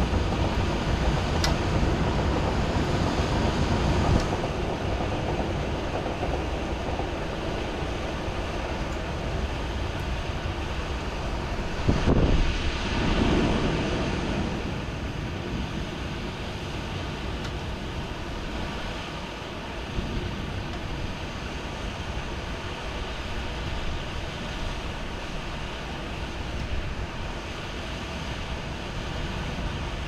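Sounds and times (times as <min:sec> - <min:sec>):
thunder roll: 0:00.0 - 0:17.2
steady downpour of rain: 0:00.0 - 0:30.0.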